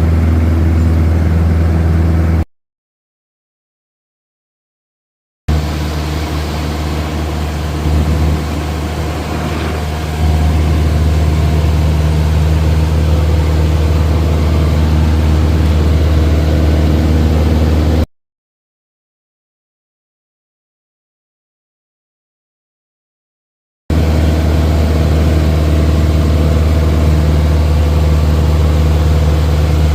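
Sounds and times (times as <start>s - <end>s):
light aircraft engine droning: 0.0s - 2.4s, 5.5s - 18.1s, 23.9s - 29.9s.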